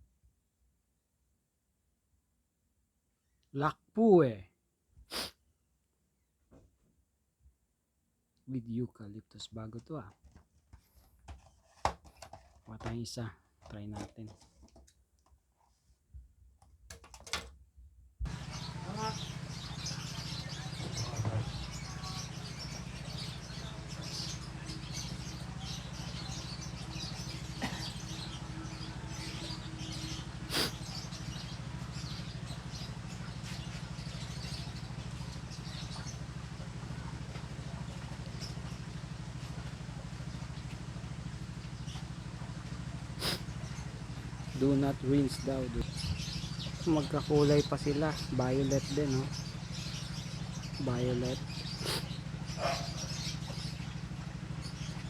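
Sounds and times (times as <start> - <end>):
lovebirds chirping: 18.3 - 55.0.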